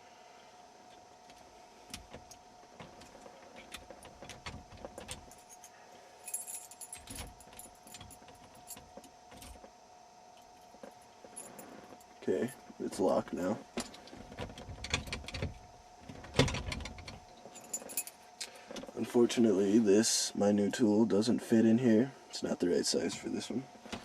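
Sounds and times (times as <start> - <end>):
keys jangling: 5.0 - 9.6, 17.5 - 18.2.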